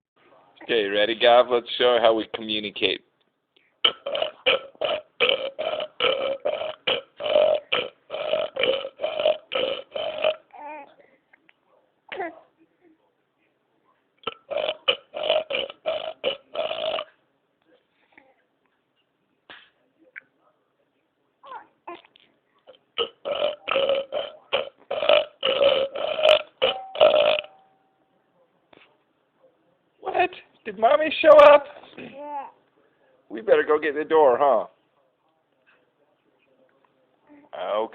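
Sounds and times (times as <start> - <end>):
person burping: 3.8 - 10.5, 14.2 - 17.1, 22.7 - 27.6.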